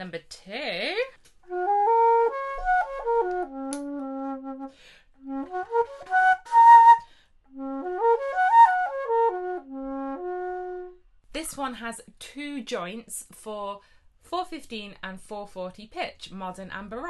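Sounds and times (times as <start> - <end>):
flute playing lively melody: 1.5 - 11.0.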